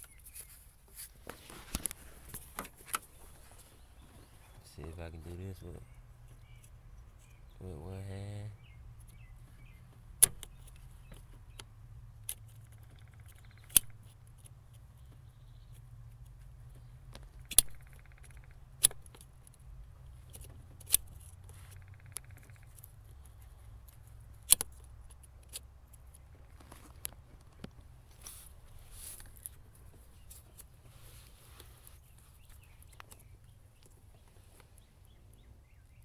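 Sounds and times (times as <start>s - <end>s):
fast even clicking: 9.0s - 26.5s
sharp metallic clicks of tools: 10.2s - 14.5s, 17.4s - 19.6s, 20.2s - 26.2s.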